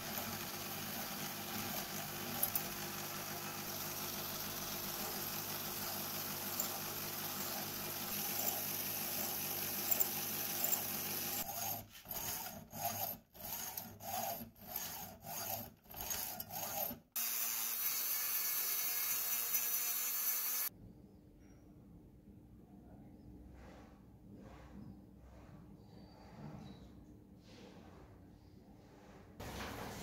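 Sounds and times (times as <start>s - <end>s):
steady rushing workshop noise: 0.0s - 20.7s
hand tool filing metal rod: 4.5s - 17.2s.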